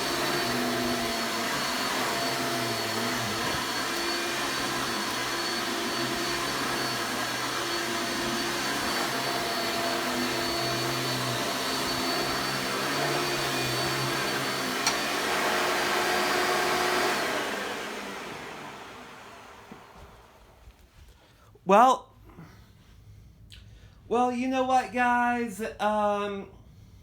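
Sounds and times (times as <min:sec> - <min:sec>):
vacuum cleaner motor whining: 0:00.0 - 0:20.6.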